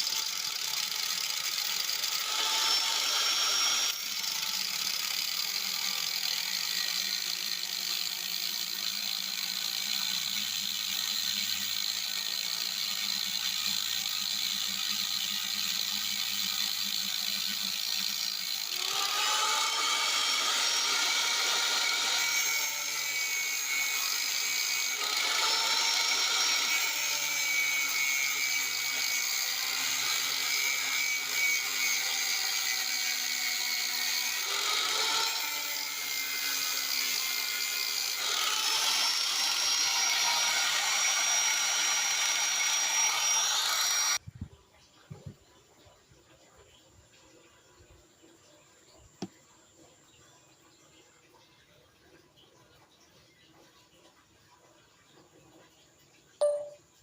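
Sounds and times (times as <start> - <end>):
power drill drilling metal: 0.0 - 44.2.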